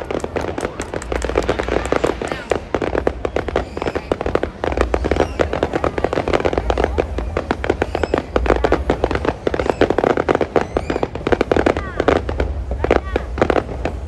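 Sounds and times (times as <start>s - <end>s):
fireworks bangs and crackles: 0.0s - 14.0s.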